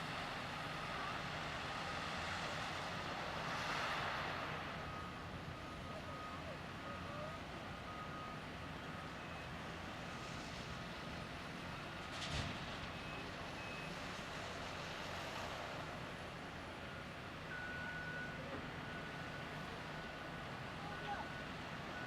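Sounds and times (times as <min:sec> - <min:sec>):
reversing alarm beeping: 0:16.9 - 0:22.0.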